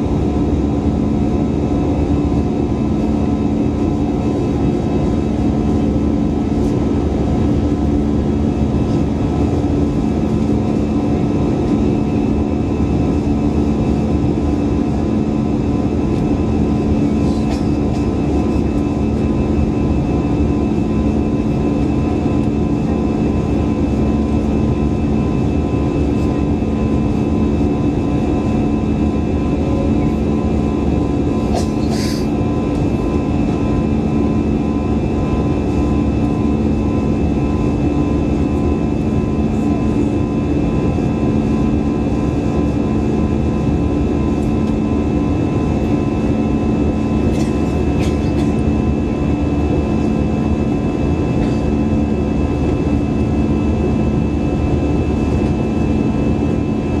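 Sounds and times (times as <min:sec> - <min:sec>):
jet engines droning: 0:00.0 - 0:57.0.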